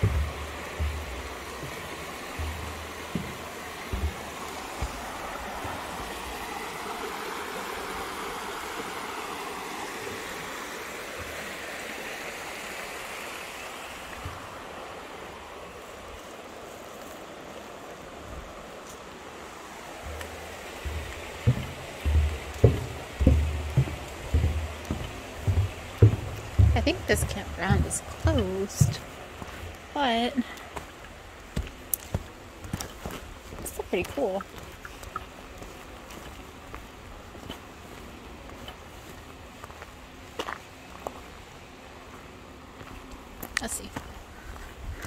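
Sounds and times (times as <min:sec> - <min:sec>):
low thumps: 0:00.0 - 0:05.0, 0:20.0 - 0:29.7
stream water rushing: 0:00.0 - 0:45.0.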